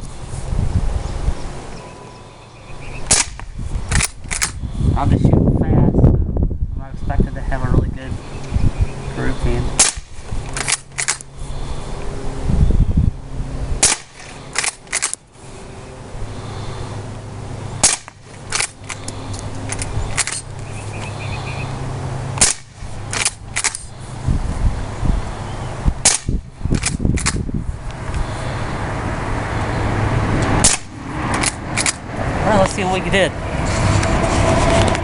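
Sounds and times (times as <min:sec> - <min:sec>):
air rifle shots: 0:03.0 - 0:04.6, 0:09.8 - 0:11.3, 0:13.8 - 0:15.2, 0:17.8 - 0:20.5, 0:22.3 - 0:23.9, 0:26.0 - 0:27.5, 0:30.5 - 0:32.1
rifle lever clacking: 0:03.9 - 0:04.6, 0:09.8 - 0:11.3, 0:13.8 - 0:15.2.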